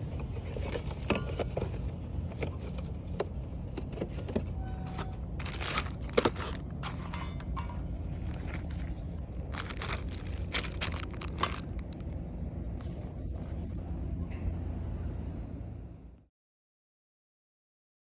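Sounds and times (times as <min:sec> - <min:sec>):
steady low rumble: 0:00.0 - 0:16.3
camping gear clicks and clinks: 0:05.4 - 0:12.2.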